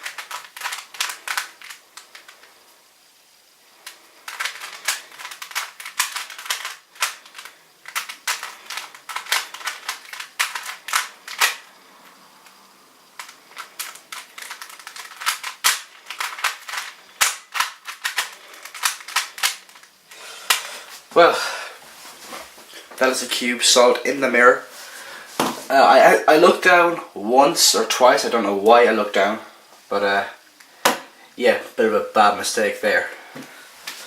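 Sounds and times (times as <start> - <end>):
puzzle cube plastic layers clicking: 0.0 - 2.4, 3.8 - 11.7, 13.2 - 19.9.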